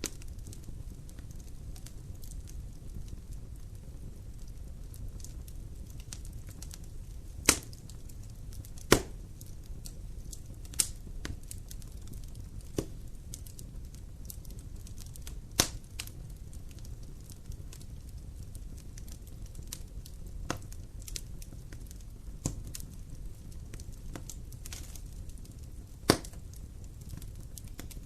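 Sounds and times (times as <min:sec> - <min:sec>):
burning wood popping: 0:00.0 - 0:28.0
rumble of fire flames: 0:00.0 - 0:28.0.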